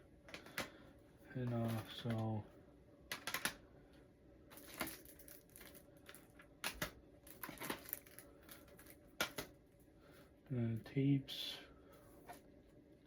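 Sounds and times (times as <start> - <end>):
packaging rustling: 4.6 - 9.5.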